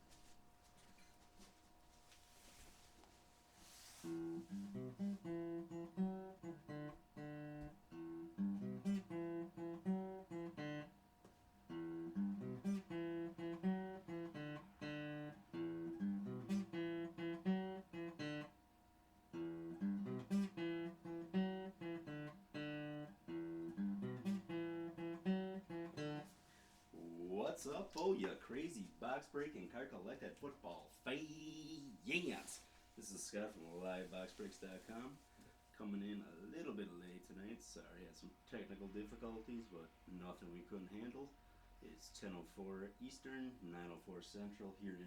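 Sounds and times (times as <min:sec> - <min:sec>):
acoustic guitar plucked and strummed: 0:02.2 - 0:18.6, 0:19.3 - 0:35.5.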